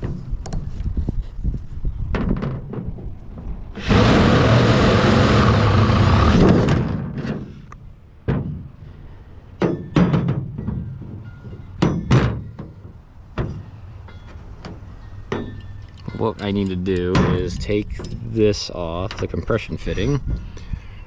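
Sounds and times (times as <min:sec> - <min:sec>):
power drill running: 0:03.8 - 0:06.9
metal parts clunking: 0:09.6 - 0:18.2.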